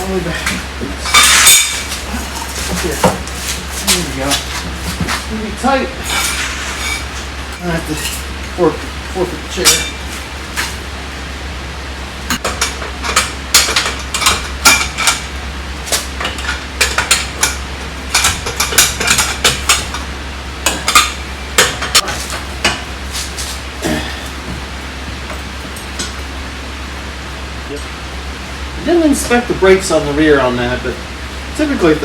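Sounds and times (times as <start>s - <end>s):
steady low hum: 0.0s - 32.0s
metal tools clinking: 0.4s - 3.2s, 6.0s - 8.6s, 9.5s - 10.2s, 25.3s - 26.4s.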